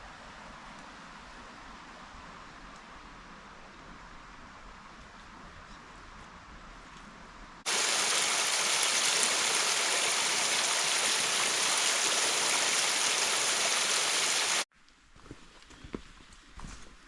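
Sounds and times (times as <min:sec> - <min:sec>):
rush of flowing water: 0:07.7 - 0:14.7.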